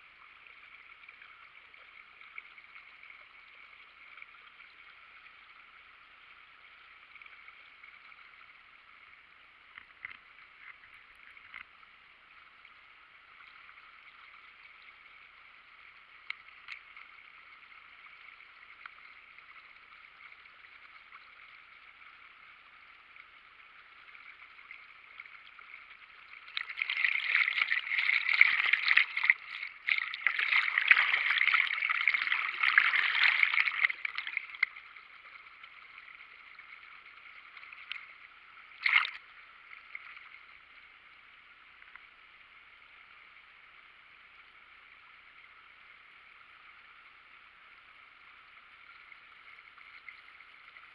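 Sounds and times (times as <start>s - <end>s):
light ticks: 9.6s - 11.8s, 16.2s - 17.3s, 18.2s - 21.6s, 41.8s - 42.1s.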